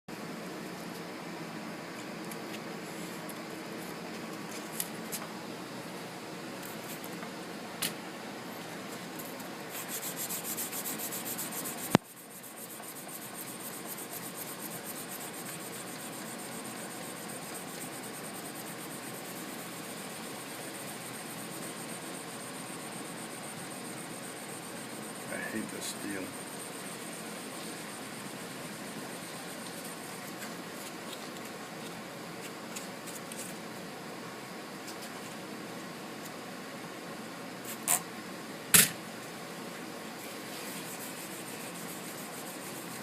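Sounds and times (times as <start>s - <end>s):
metal blade being sanded: 9.8s - 16.2s, 40.8s - 43.0s.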